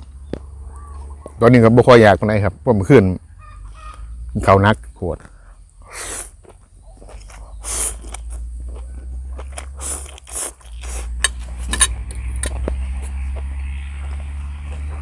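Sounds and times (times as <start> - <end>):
steady low hum: 0.0 - 15.0
noisy eating sounds: 5.8 - 13.1.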